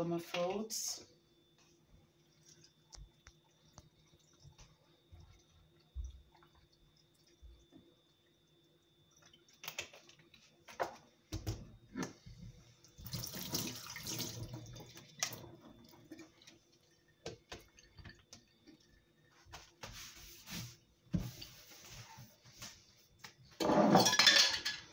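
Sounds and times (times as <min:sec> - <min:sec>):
water running: 0:01.5 - 0:10.8, 0:11.9 - 0:22.8
kitchen handling clatter: 0:23.6 - 0:24.9.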